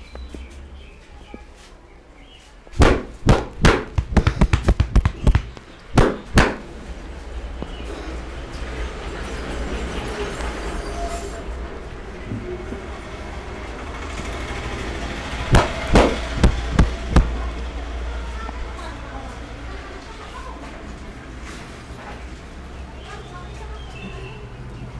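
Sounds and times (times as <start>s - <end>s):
steady background noise: 0.0s - 24.9s
hands slapping a body: 2.8s - 6.6s.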